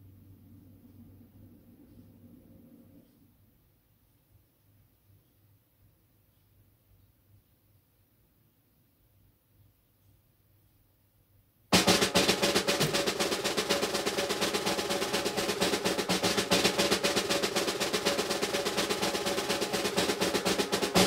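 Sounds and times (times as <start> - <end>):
fast snare drum roll: 11.7 - 21.0.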